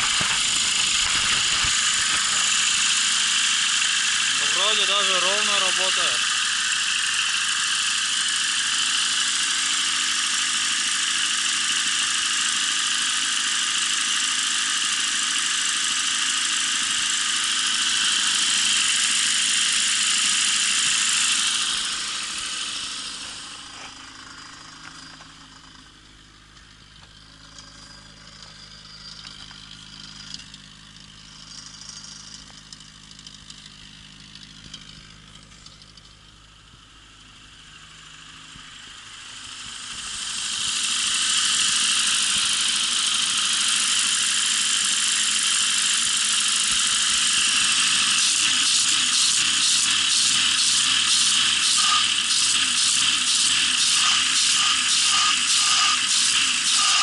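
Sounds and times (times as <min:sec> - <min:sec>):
car engine running: 0:00.0 - 0:57.0
faint engine ticks: 0:23.2 - 0:36.9.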